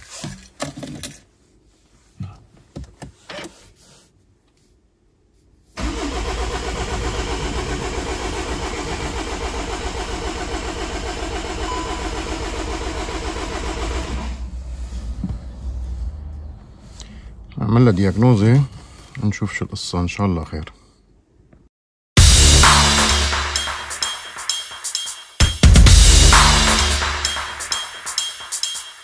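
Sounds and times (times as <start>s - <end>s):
starter cranking engine: 5.8s - 14.5s.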